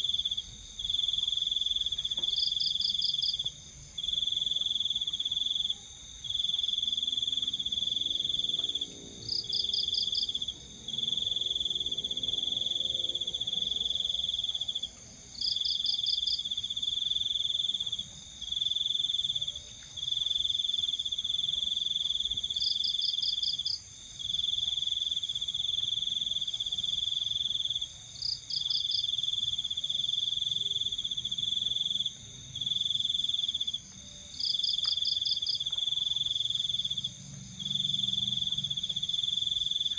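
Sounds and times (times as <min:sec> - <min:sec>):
steady high insect buzz: 0:00.0 - 0:19.4
insect chirps: 0:00.0 - 0:39.9.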